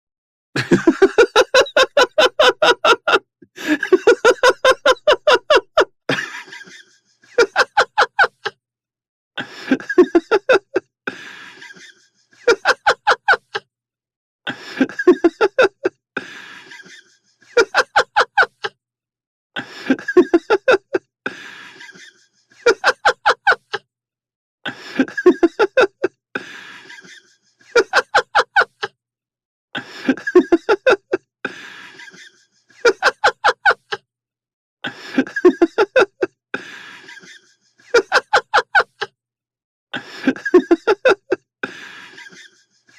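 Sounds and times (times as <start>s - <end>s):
man laughing: 0.6s - 8.6s, 9.4s - 13.6s, 14.6s - 15.9s, 16.6s - 18.8s, 19.6s - 21.0s, 21.7s - 23.8s, 24.8s - 26.2s, 26.8s - 28.9s, 29.8s - 31.2s, 31.9s - 34.0s, 34.9s - 36.4s, 37.0s - 39.1s, 40.0s - 42.9s.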